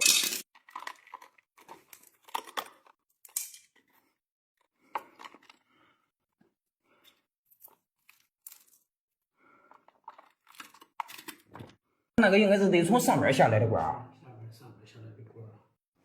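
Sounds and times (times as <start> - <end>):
hands and tools clicking and scraping: 0.0 - 8.9, 9.5 - 11.7.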